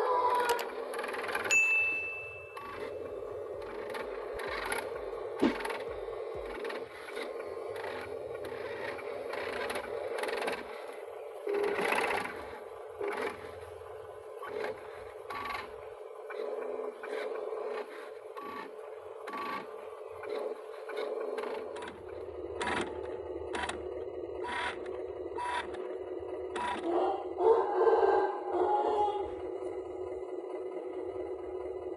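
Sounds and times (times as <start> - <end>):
excavator machine whine: 0.0 - 31.9
sharp clicks and knocks: 3.9 - 6.8.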